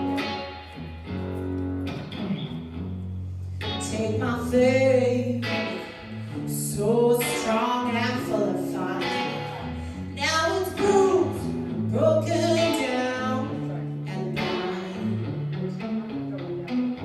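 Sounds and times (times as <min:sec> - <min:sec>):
guitar accompaniment: 0:00.0 - 0:17.0
held bass notes: 0:00.0 - 0:17.0
person singing: 0:03.8 - 0:16.1.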